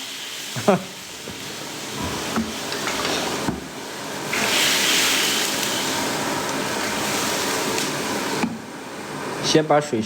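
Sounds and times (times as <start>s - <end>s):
wok hissing: 0.0s - 9.7s.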